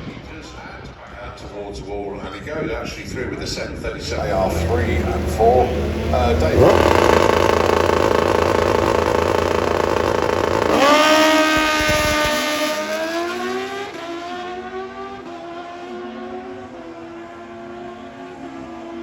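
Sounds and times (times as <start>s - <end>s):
motorcycle engines at full throttle: 4.0s - 19.0s.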